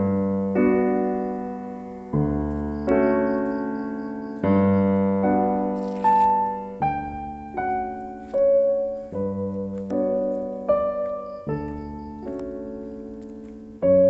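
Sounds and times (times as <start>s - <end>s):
slow soft piano music: 0.0s - 14.0s.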